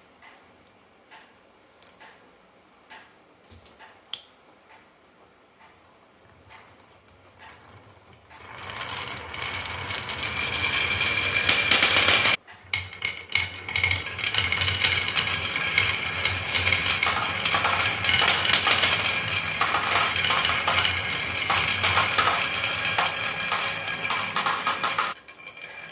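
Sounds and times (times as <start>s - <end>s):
marbles rattling down wooden run: 6.8s - 25.9s.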